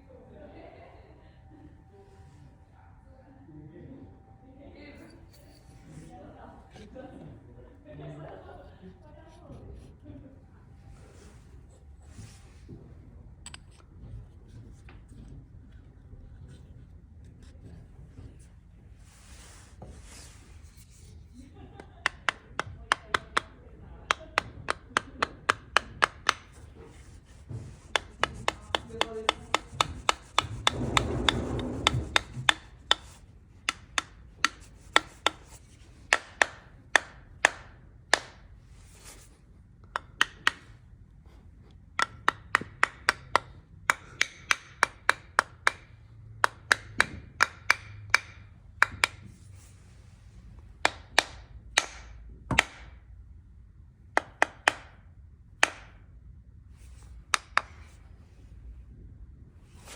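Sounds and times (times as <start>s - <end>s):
hammer tapping hand plane: 21.8s - 38.4s, 42.0s - 49.5s
scraping rasping: 24.1s - 39.4s.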